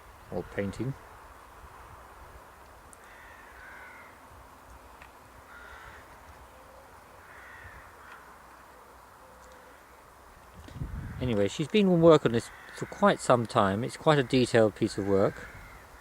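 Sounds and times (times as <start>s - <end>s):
faint outdoor background: 0.0s - 16.0s
bird calling: 3.0s - 4.2s, 5.5s - 10.1s, 12.4s - 16.0s.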